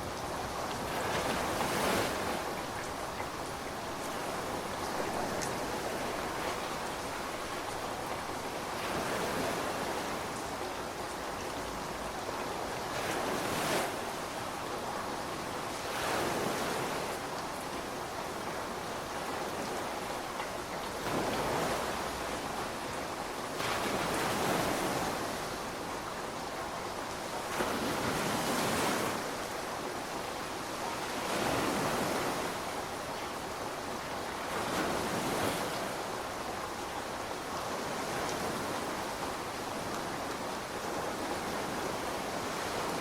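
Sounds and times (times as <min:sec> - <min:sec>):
steady rain hiss: 0:00.0 - 0:43.0.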